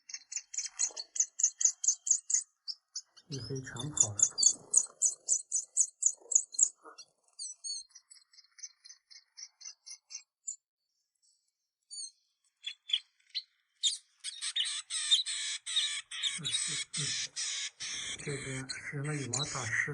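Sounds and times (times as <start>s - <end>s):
small songbirds chirping: 0.0s - 19.9s.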